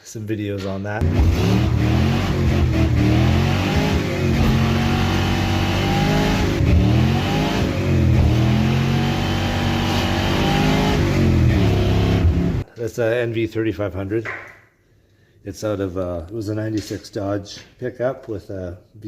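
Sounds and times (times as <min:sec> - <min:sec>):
car engine revving loudly: 0:01.0 - 0:12.6.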